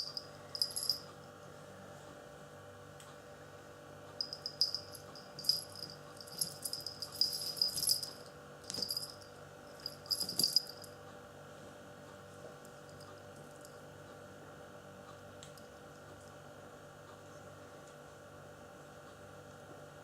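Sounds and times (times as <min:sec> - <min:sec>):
small jingle bell rattling: 0:00.0 - 0:01.1, 0:04.2 - 0:11.0.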